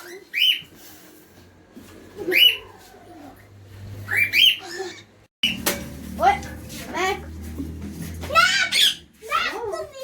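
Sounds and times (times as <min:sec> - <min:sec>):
parrot squawks: 0:04.0 - 0:05.6, 0:08.5 - 0:09.1.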